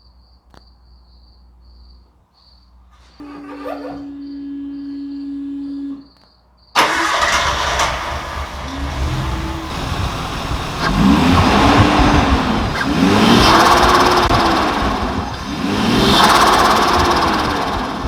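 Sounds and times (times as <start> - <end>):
car engine revving: 6.8 - 18.0.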